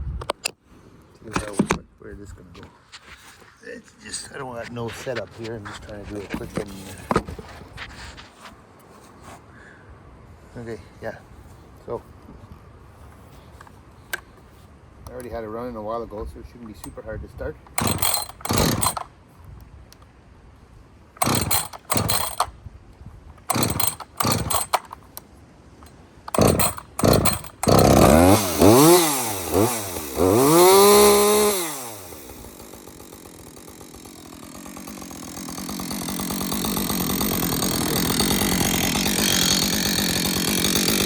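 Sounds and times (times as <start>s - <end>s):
chainsaw engine revving and idling: 17.7s - 19.1s, 21.2s - 22.5s, 23.4s - 25.0s, 26.3s - 41.0s
starter cord pulls: 17.7s - 19.1s, 21.2s - 22.5s, 23.3s - 25.2s, 25.8s - 41.0s.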